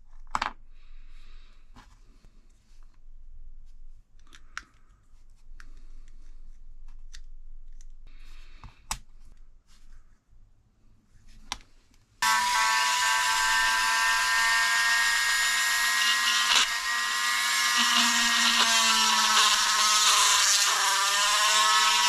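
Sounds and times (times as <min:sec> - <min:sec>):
power tool whining: 0:12.2 - 0:22.0.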